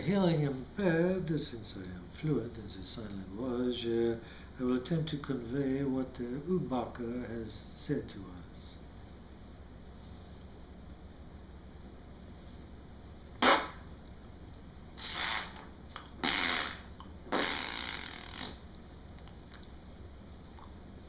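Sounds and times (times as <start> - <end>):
noisy rasping bursts: 15.0 - 18.7.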